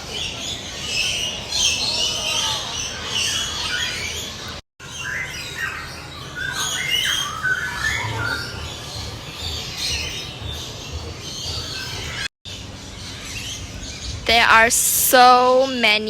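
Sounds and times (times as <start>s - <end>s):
birds squawking and chirping: 0.0s - 15.3s.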